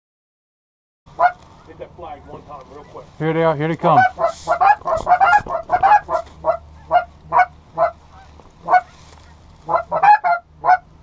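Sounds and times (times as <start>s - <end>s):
goose honking: 1.2s - 1.4s, 3.8s - 11.0s.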